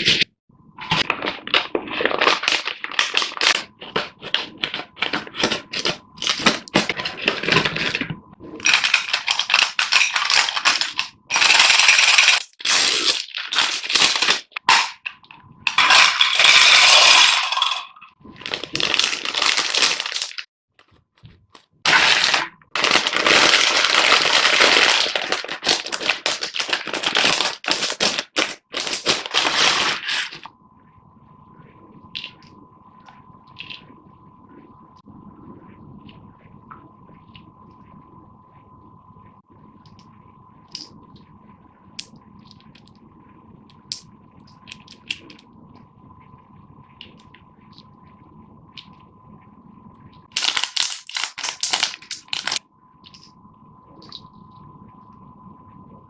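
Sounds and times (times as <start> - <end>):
plastic packaging crinkling and tearing: 0.8 - 17.7, 18.3 - 20.5, 21.9 - 30.5, 50.3 - 53.3
candies clattering: 0.9 - 20.5, 21.9 - 30.5, 50.3 - 53.3.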